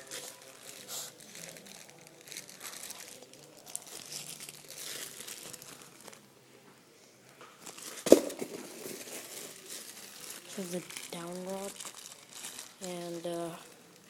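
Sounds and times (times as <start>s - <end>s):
packaging crinkling and rustling: 0.0s - 6.3s, 7.6s - 14.0s.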